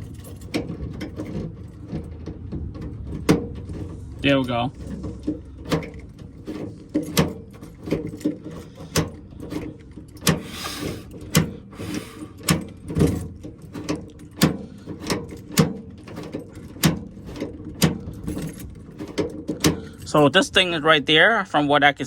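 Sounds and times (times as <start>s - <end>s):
tailgate lock clicking: 4.9s - 20.1s.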